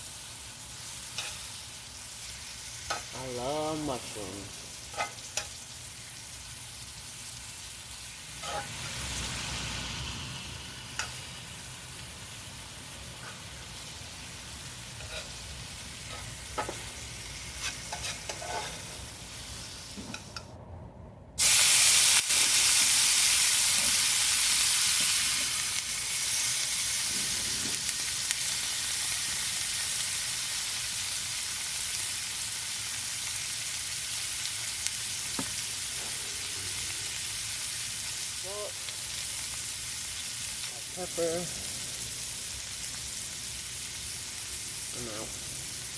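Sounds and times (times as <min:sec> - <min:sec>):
food sizzling in a pan: 0:00.0 - 0:20.4, 0:21.4 - 0:45.9.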